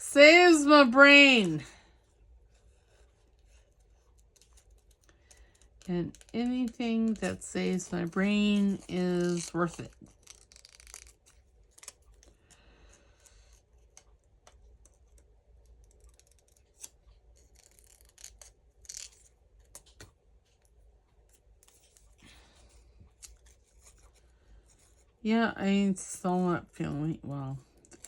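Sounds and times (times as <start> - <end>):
scissors snipping paper: 3.4 - 12.3, 14.8 - 20.1.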